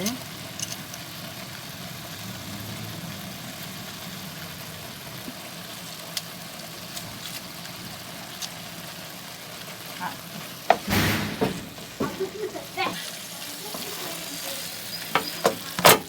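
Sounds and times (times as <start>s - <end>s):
vegetables sizzling in oil: 0.0s - 16.0s
faint utensil ticks: 6.1s - 7.1s
spoon clattering against pan: 14.9s - 16.0s.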